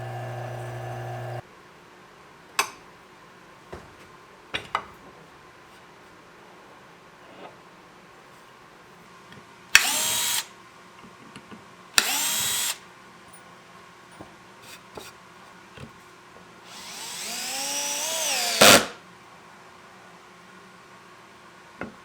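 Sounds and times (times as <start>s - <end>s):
power drill motor whine: 0.0s - 1.4s, 9.8s - 10.4s, 12.0s - 12.8s, 16.7s - 18.9s.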